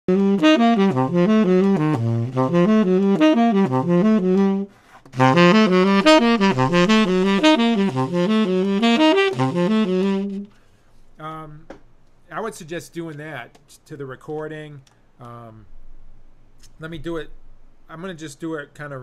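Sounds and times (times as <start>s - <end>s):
tenor saxophone jazz lines: 0.1s - 10.6s.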